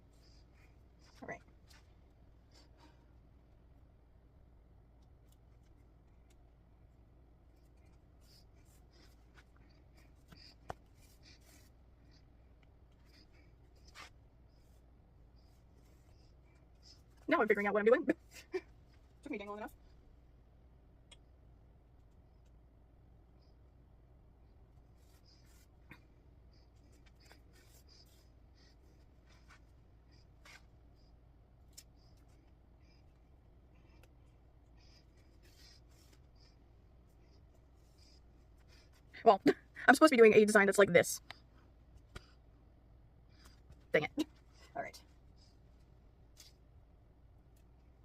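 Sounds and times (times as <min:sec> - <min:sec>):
low room hum: 0:00.0 - 0:48.0
needle and thread through fabric: 0:07.5 - 0:14.8, 0:26.6 - 0:32.5.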